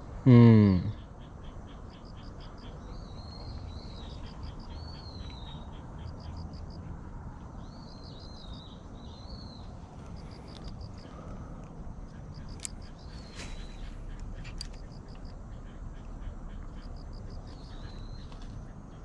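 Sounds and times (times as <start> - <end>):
birds calling: 0.8 - 7.0, 7.6 - 19.0
steady low rumble: 8.6 - 19.0
quick high bird chirps: 12.4 - 15.0.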